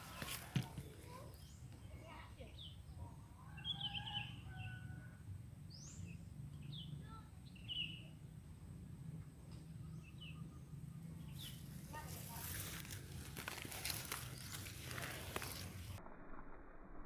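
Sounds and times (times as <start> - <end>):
birds chirping: 0.0 - 5.0, 5.6 - 8.4, 9.2 - 16.0.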